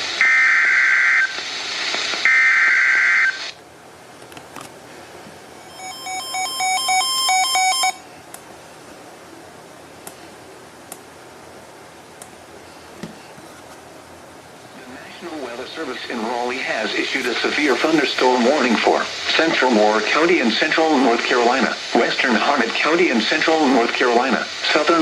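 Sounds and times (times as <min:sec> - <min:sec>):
radio hiss: 0:00.0 - 0:03.6, 0:09.0 - 0:25.0.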